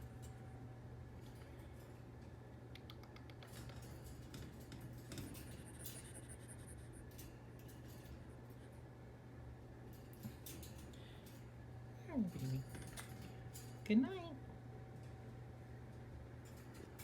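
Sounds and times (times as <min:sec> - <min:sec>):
squirrel scratching and clicking: 0:02.8 - 0:08.2.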